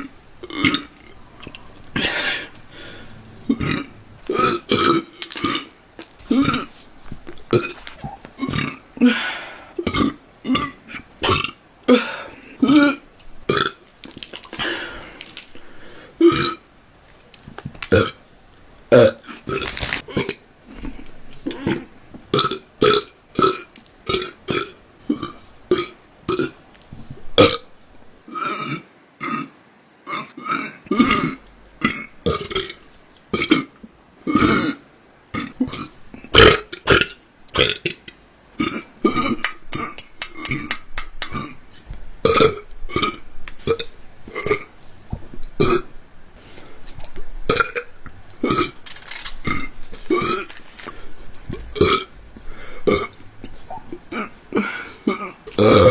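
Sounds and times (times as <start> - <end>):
woman burping: 0.4 - 5.7, 38.6 - 40.7, 42.2 - 44.7, 52.9 - 55.9.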